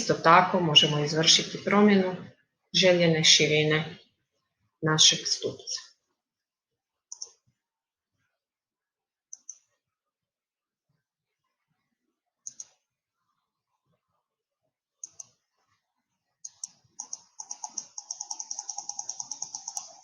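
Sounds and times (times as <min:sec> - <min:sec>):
computer mouse clicks: 0:07.1 - 0:07.4, 0:09.3 - 0:09.7, 0:12.4 - 0:12.8, 0:15.0 - 0:15.4, 0:16.4 - 0:20.0.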